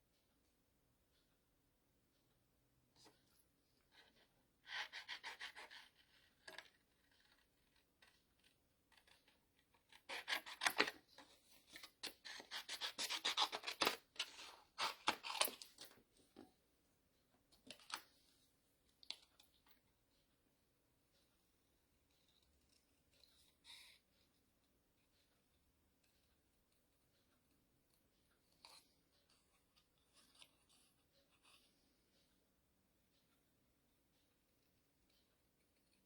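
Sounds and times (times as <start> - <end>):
scissors snipping paper: 8.4 - 15.9.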